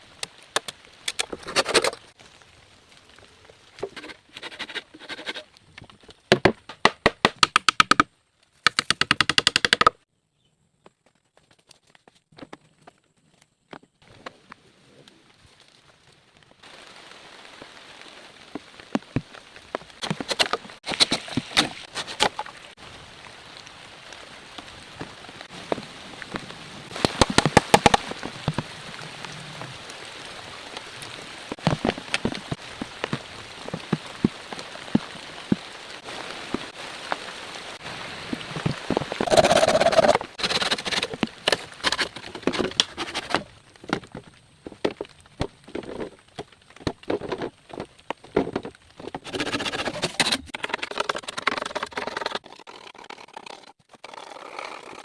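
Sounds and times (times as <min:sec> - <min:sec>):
rain hissing: 0:20.6 - 0:43.8.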